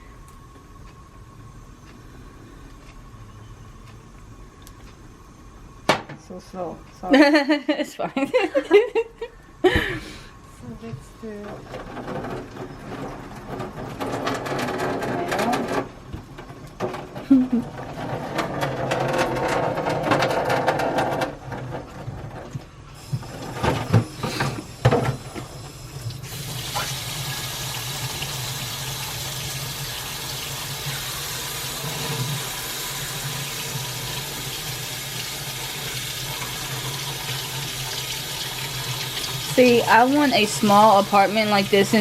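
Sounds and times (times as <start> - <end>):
constant low hum: 0.0 - 26.3
kitchen clatter: 11.4 - 22.6
tap running into sink: 22.4 - 40.4.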